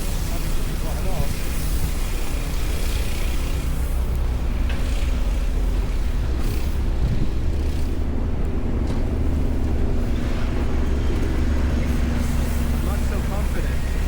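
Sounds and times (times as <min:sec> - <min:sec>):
city traffic rumble: 0:00.0 - 0:14.0
faint engine hum: 0:00.0 - 0:14.0
wind on microphone: 0:06.8 - 0:07.6.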